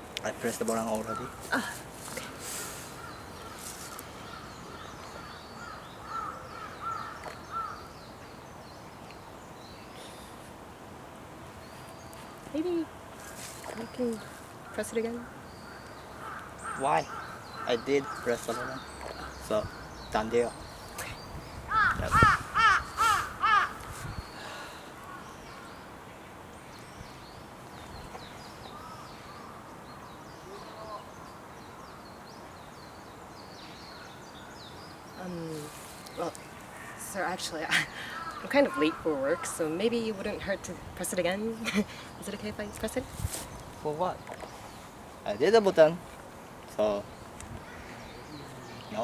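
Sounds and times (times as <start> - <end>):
small birds chirping: 0.0 - 10.6, 11.5 - 49.0
faint outdoor background: 0.0 - 49.0
crow cawing: 2.9 - 7.8, 15.2 - 19.4, 21.7 - 23.8, 28.8 - 29.6, 37.7 - 39.7.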